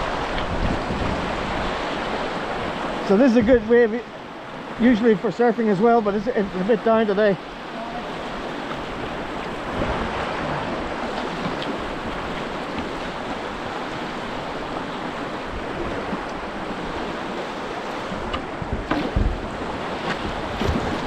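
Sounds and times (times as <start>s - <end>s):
river water rushing: 0.0s - 21.0s
sharp thumps: 18.1s - 21.0s.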